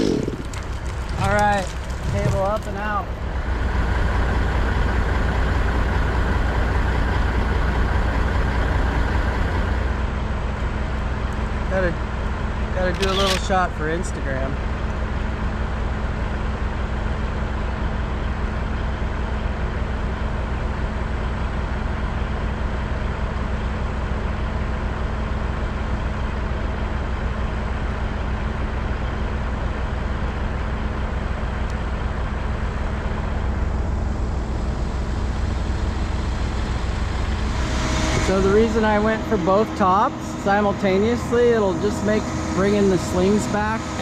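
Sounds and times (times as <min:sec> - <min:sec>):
crane engine droning: 0:00.0 - 0:44.0.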